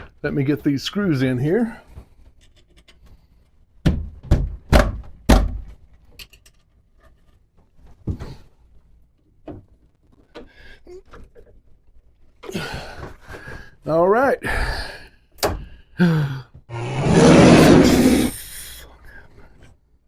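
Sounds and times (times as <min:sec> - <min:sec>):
wooden knocks and thumps: 0:03.8 - 0:05.8.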